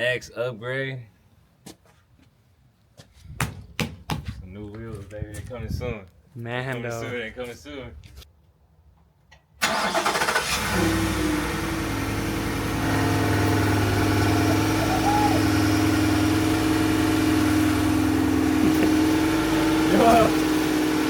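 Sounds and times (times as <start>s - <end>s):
engine cranking: 9.6s - 21.0s
engine idling: 9.6s - 21.0s.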